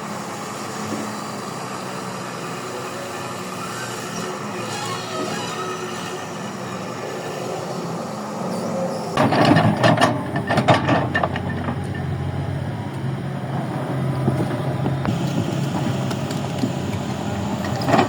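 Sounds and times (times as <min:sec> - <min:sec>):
excavator diesel engine running: 0:00.0 - 0:18.0
clattering and scraping soil: 0:09.2 - 0:12.2, 0:14.3 - 0:18.0.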